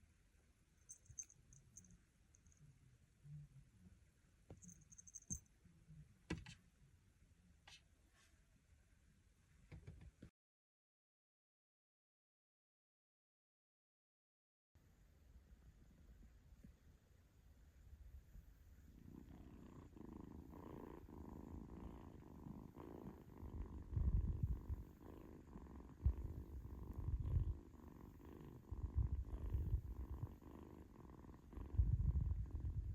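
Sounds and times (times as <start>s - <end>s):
kitten purring: 0.9s - 2.6s, 18.7s - 32.9s.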